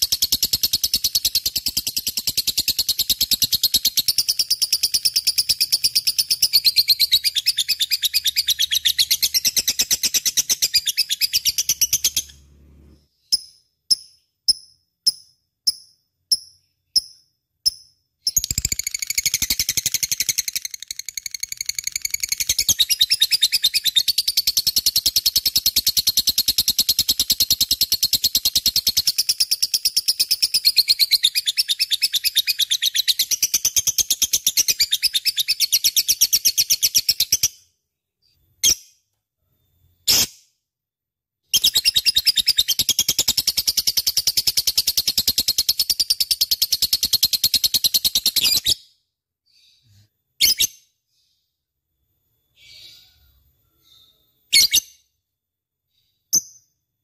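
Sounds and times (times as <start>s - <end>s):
lovebird chattering chirps: 13.3s - 26.6s.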